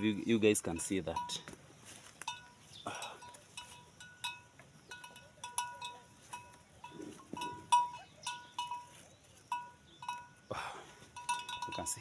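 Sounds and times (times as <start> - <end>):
cowbell clanking: 0.0 - 1.5, 2.2 - 12.0.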